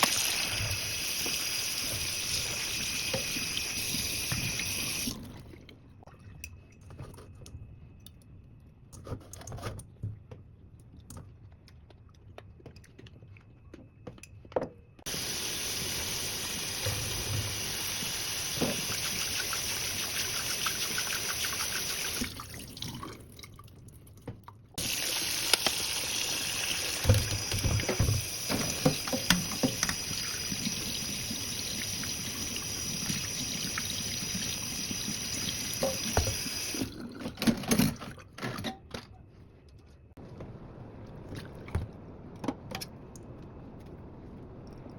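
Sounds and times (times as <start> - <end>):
tap running into sink: 26.9 - 30.8, 35.5 - 36.8.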